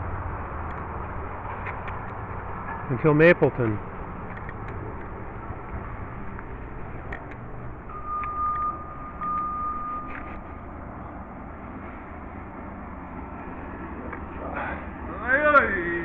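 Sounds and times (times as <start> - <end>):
distant mowing machinery rumble: 0.0 - 16.0
high beep: 7.9 - 10.3.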